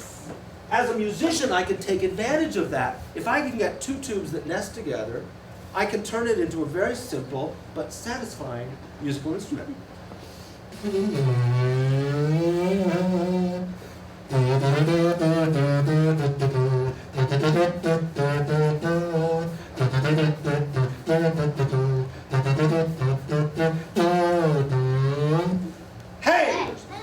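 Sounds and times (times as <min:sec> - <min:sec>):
cardboard slide instrument tune: 0:10.8 - 0:25.7.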